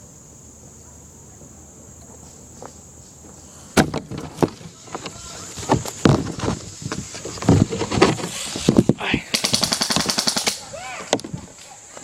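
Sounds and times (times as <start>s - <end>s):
insects buzzing: 0.0s - 12.0s
airsoft gunfire cracks: 9.3s - 10.6s.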